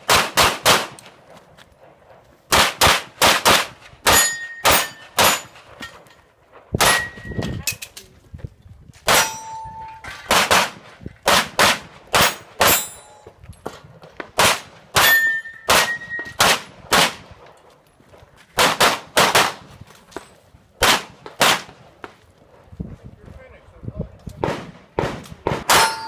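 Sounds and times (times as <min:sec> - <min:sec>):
steel target ringing: 0:04.1 - 0:05.6, 0:09.1 - 0:10.1, 0:15.0 - 0:16.4, 0:25.7 - 0:26.0.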